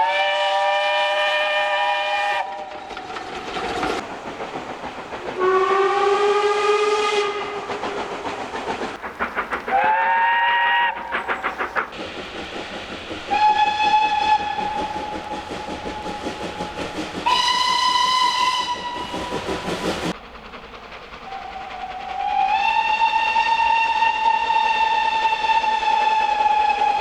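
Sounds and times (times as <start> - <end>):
steam locomotive whistle: 0.0 - 2.9, 5.4 - 7.6, 9.7 - 11.1, 13.3 - 20.1, 21.3 - 27.0
steam engine exhaust beat: 3.8 - 27.0.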